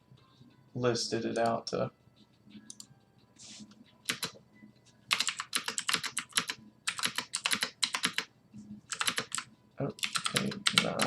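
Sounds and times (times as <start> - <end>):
fast typing on keyboard: 4.1 - 4.3, 5.1 - 8.3, 8.9 - 11.0.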